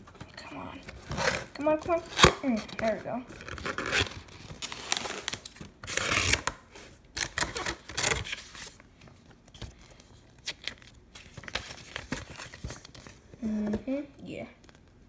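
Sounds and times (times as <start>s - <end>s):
box packaging scraping and tearing: 0.9s - 8.8s.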